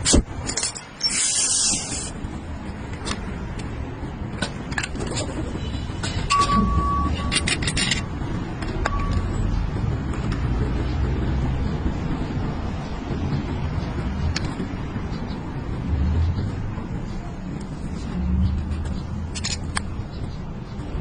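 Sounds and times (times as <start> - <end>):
metallic clicks and clinks: 0.4 - 1.3, 6.0 - 9.5, 18.6 - 20.0
steady low rumble: 1.8 - 21.0
brief steady tone: 6.3 - 7.4, 8.8 - 9.4.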